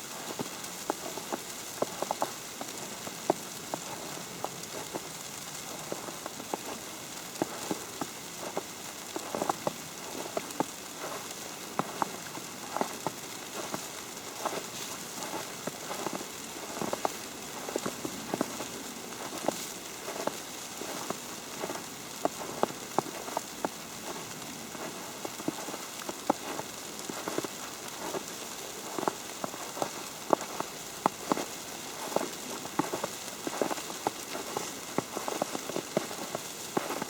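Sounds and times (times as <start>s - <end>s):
snow ticking on an umbrella: 0.0s - 37.0s.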